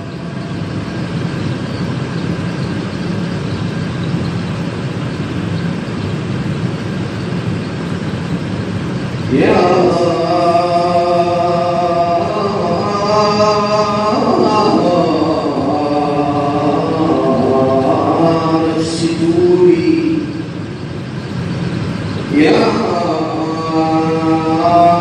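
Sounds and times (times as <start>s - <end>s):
low chanting voices drone: 0.0s - 25.0s
solo voice singing: 9.3s - 20.6s, 22.3s - 25.0s.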